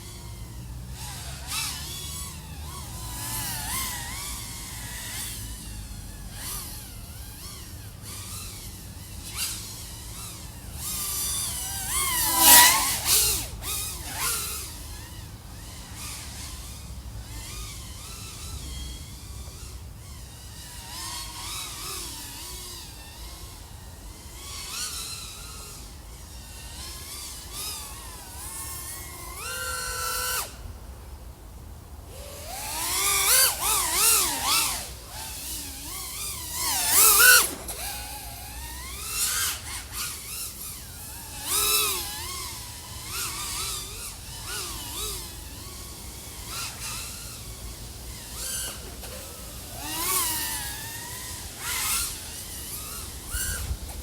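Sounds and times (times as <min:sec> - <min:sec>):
drone motors and propellers whining: 0:00.0 - 0:54.0.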